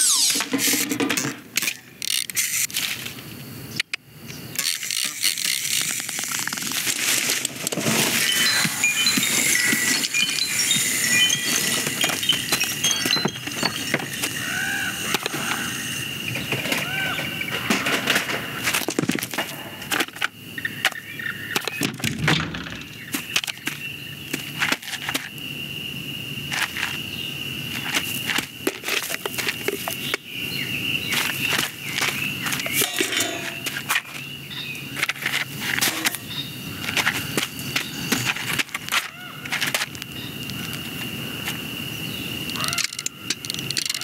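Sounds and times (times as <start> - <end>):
short squeaks: 0.0 - 0.9.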